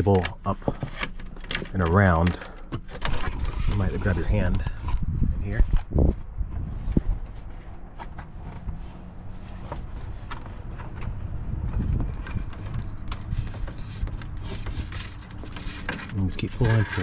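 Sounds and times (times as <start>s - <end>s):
plastic trim clicks and scrapes: 0.0s - 5.0s, 8.0s - 17.0s
low rumble: 3.2s - 15.2s.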